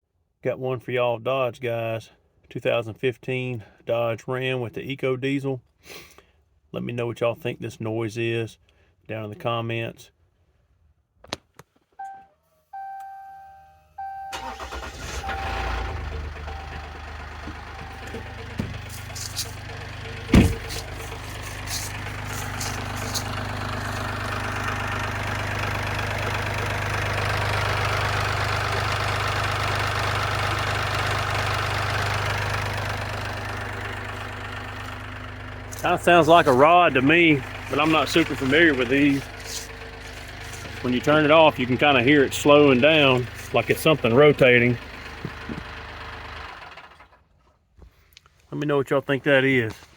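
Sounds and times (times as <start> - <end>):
diesel engine idling: 14.0 - 47.2
engine knocking noise: 14.4 - 47.2.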